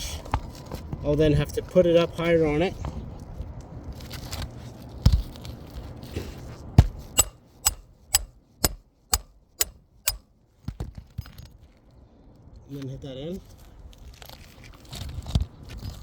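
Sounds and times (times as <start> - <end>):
hammer driving nail into shingle: 6.8 - 10.2.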